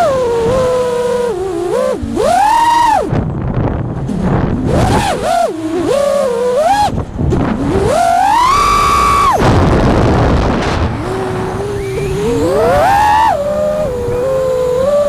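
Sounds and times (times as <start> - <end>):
quadcopter motors whining: 0.0 - 15.0
rushing noise: 6.6 - 14.4.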